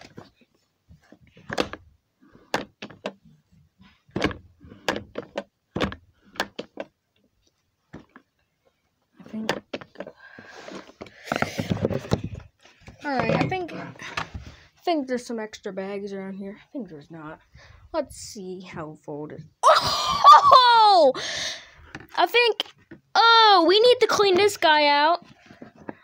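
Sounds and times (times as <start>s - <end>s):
household knocks and clunks: 0.0s - 7.0s, 7.8s - 8.3s, 9.2s - 14.6s
clattering and rustling: 9.0s - 14.7s.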